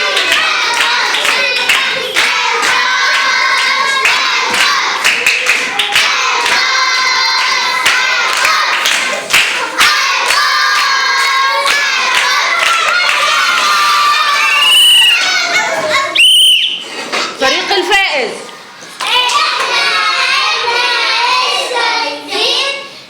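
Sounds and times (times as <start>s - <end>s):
hands clapping: 0.0s - 13.8s
girls singing in unison: 0.0s - 16.0s, 19.1s - 23.0s.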